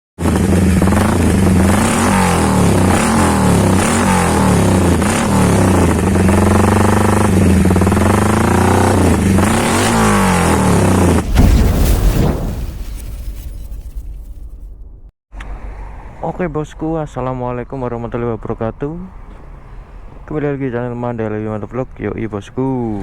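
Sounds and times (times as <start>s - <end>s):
motorcycle engine revving: 0.2s - 11.5s.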